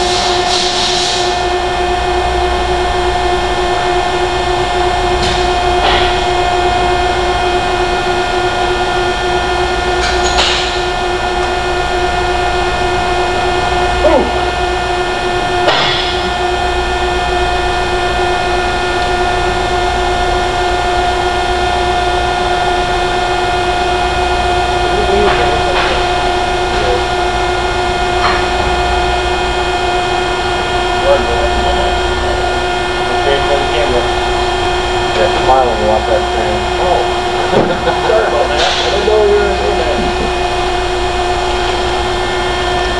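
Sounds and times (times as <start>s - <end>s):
machine hum: 0.0s - 42.9s.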